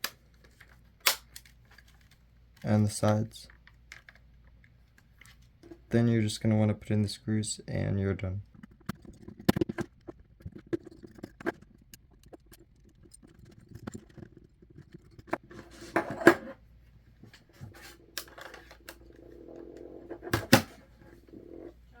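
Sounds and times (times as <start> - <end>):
small screws clicking and scraping: 8.4 - 16.6
screwdriver rubbing: 8.5 - 15.8.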